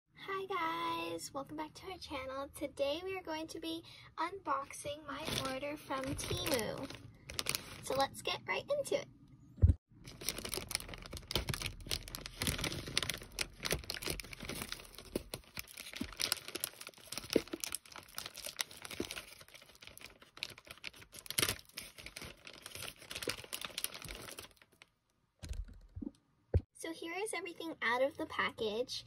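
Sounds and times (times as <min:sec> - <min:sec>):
plastic packaging tearing and crinkling: 0:05.2 - 0:08.0, 0:10.0 - 0:24.9.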